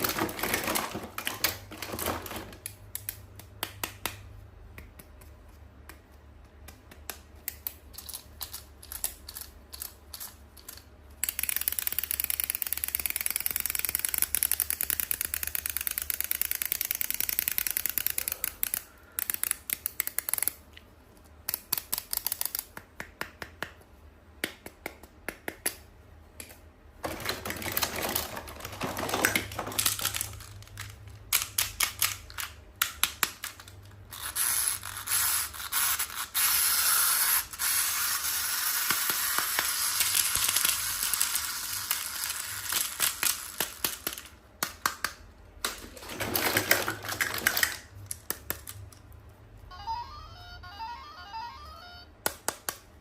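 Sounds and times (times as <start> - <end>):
packaging rustling: 0.0 - 2.6, 27.0 - 31.1, 45.8 - 47.8
toy packaging crinkling: 0.0 - 2.6, 27.0 - 32.6, 33.4 - 44.3, 45.8 - 48.9.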